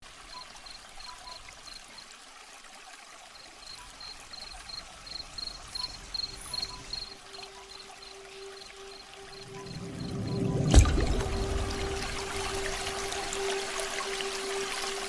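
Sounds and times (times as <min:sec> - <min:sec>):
trickle of running water: 0:00.0 - 0:15.0
insect chirping: 0:00.2 - 0:02.1, 0:03.3 - 0:15.0.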